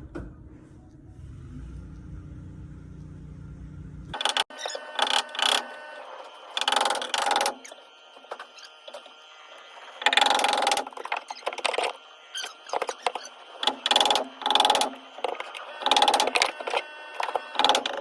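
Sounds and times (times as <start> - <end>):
hand tool working wood: 6.6 - 18.0.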